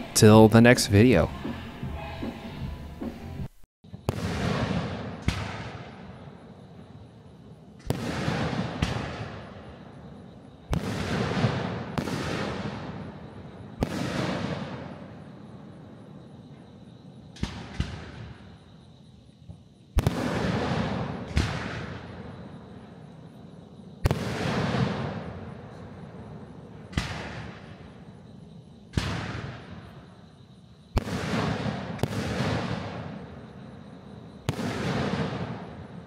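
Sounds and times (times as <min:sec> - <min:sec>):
fireworks bangs: 0:00.0 - 0:06.3, 0:07.8 - 0:09.8, 0:10.6 - 0:15.3, 0:20.0 - 0:22.4, 0:24.0 - 0:26.1, 0:26.9 - 0:27.9, 0:28.9 - 0:30.0, 0:30.9 - 0:33.6, 0:34.4 - 0:36.0.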